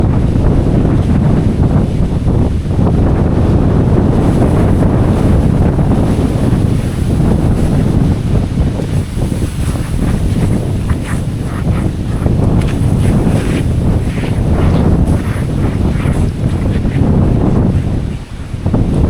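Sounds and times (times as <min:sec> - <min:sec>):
wind buffeting microphone: 0:00.0 - 0:19.0
rustling crackles: 0:04.0 - 0:19.0.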